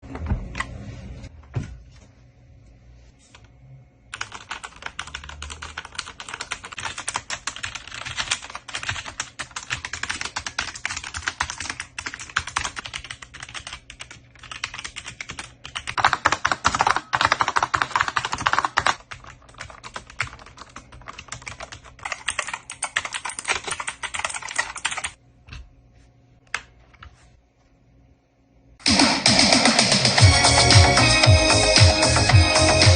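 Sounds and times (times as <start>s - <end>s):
fast typing on keyboard: 4.1s - 25.2s.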